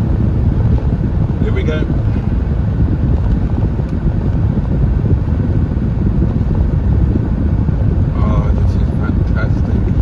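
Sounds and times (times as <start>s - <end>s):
car engine and road noise: 0.0s - 10.0s.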